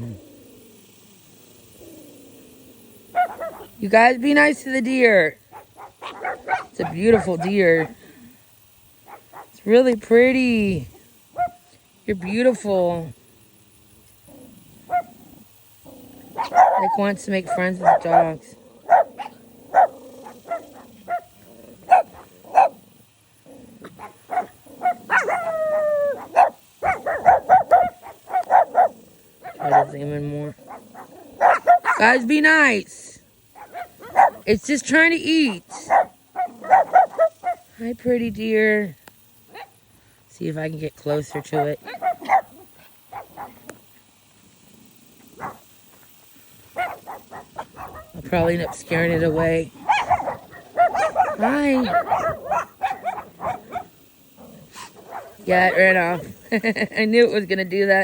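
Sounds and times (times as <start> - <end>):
dog drawn-out cry: 2.8 - 3.8, 14.4 - 15.3, 15.9 - 17.0, 17.8 - 22.8, 23.8 - 29.9, 30.7 - 32.1, 33.6 - 34.5, 35.8 - 37.7, 49.8 - 54.0
dogs barking: 3.0 - 3.8, 5.4 - 8.0, 9.0 - 9.6, 11.3 - 11.6, 14.8 - 15.3, 15.9 - 22.9, 23.7 - 30.0, 30.6 - 32.2, 33.4 - 34.6, 35.4 - 37.7, 39.4 - 39.8, 41.4 - 43.6, 45.3 - 45.7, 46.7 - 49.1, 49.7 - 55.9.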